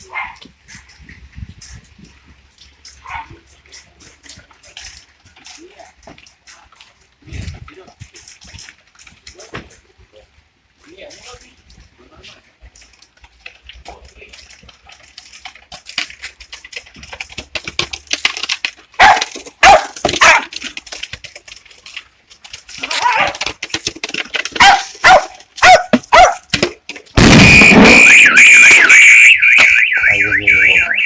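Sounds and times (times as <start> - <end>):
dog barking and yipping: 0.0 - 0.5, 3.0 - 3.4, 19.0 - 20.5, 24.6 - 26.5
plastic bottle crinkling: 14.4 - 27.2
warbling electronic alarm: 27.2 - 31.0.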